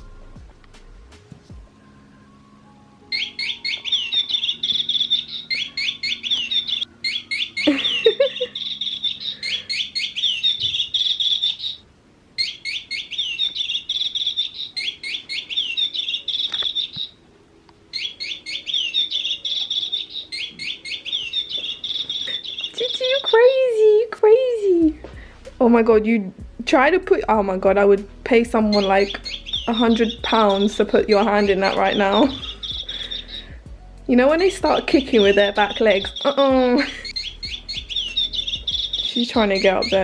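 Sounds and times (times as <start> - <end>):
electronic bird chirping: 3.0 - 17.2, 17.9 - 23.9, 28.6 - 40.0.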